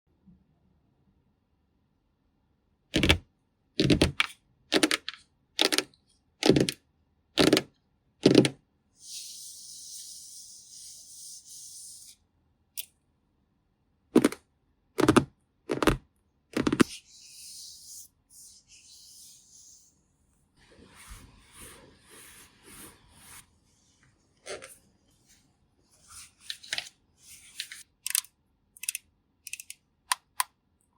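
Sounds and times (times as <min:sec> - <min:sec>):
makeup items tapping and knocking: 0:03.8 - 0:05.8, 0:08.2 - 0:08.6, 0:14.2 - 0:14.4, 0:15.0 - 0:16.0, 0:16.6 - 0:16.9.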